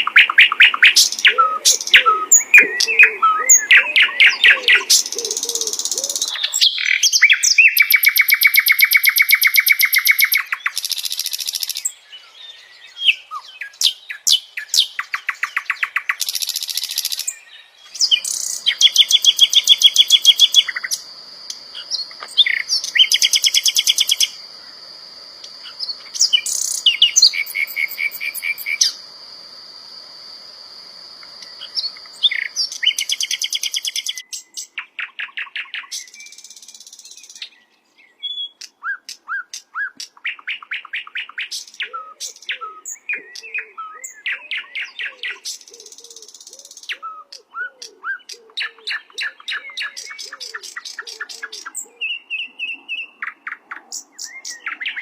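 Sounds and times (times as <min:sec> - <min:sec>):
bird trilling and chattering: 0:00.0 - 0:11.9, 0:18.0 - 0:24.4.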